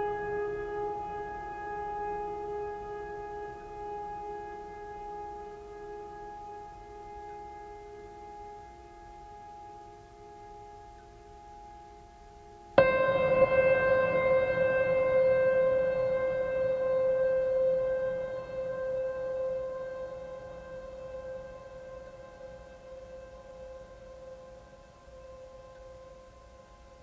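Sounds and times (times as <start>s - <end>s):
drone-like sustained chord music: 12.8s - 25.4s.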